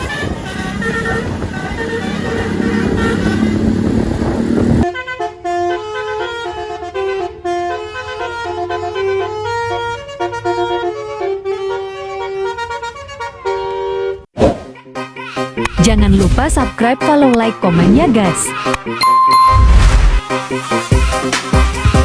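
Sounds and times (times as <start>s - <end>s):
vehicle horn: 0.0s - 3.7s, 4.8s - 14.3s
melodic bus horn playing a tune: 0.0s - 4.1s, 4.8s - 15.7s
road noise: 0.0s - 14.2s, 19.5s - 20.3s.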